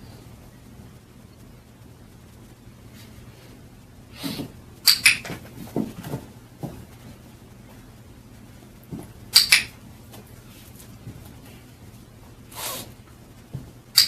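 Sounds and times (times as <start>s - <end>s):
training clicker double click: 4.9s - 5.2s, 9.4s - 9.7s.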